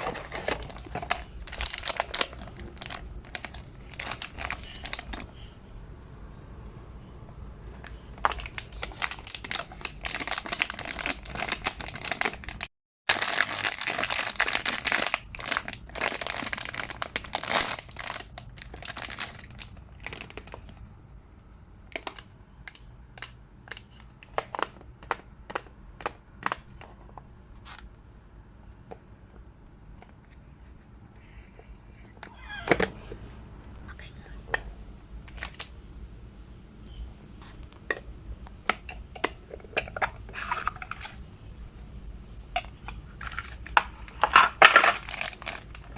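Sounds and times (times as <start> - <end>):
packaging crinkling and tearing: 0.0 - 5.3, 8.2 - 20.8, 43.2 - 45.9.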